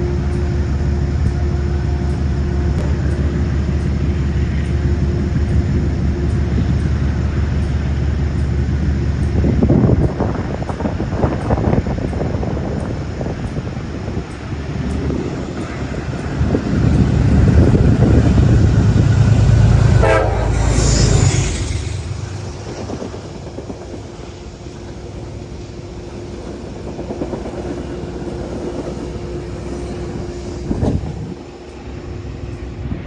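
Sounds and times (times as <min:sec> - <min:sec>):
train rumbling past: 0:00.0 - 0:33.0
train horn: 0:15.6 - 0:22.2.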